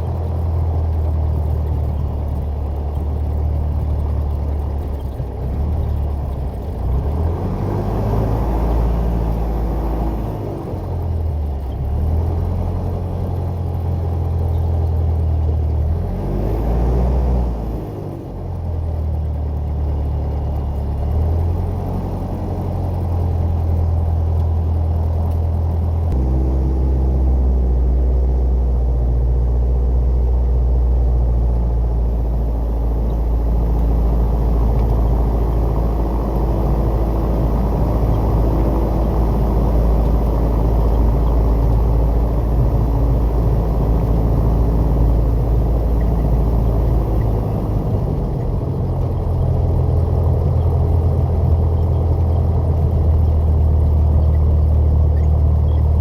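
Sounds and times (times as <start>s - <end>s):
airplane piston engine and propeller: 17.7s - 56.0s.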